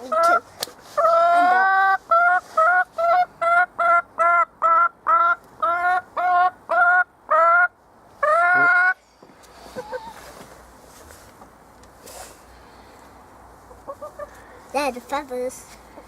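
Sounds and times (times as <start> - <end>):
chicken clucking: 0.0 - 9.0, 9.7 - 10.4, 13.6 - 14.4.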